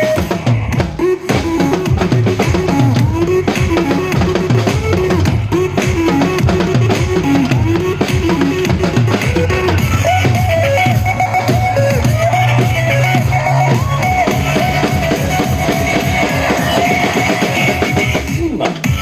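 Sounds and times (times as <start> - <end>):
bass drum: 0.0 - 19.0
drum solo: 0.0 - 19.0.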